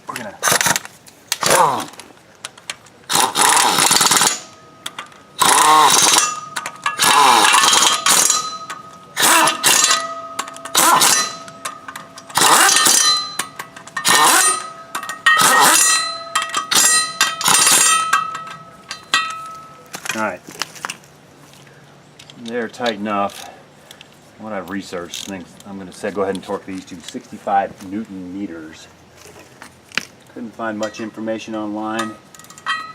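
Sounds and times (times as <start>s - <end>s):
power wrench motor whine: 3.1s - 4.6s, 5.4s - 18.5s.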